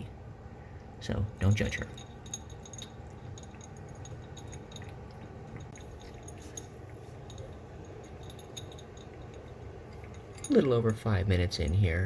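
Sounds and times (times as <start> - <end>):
low room hum: 0.0 - 12.0
cat eating dry kibble: 1.4 - 12.0
kibble clicking against dish: 1.8 - 11.2.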